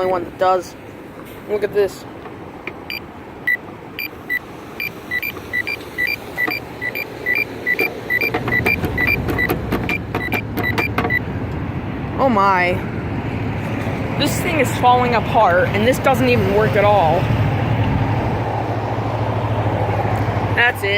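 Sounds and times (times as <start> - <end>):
traffic noise: 0.0 - 20.9
high beeps of push button: 2.9 - 11.2.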